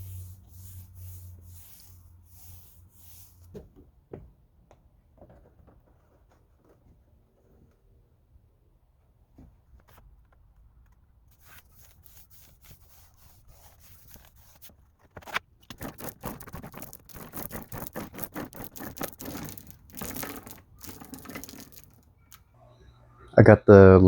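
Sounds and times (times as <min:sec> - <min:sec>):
scraping on plastic laminate: 0:11.3 - 0:22.0.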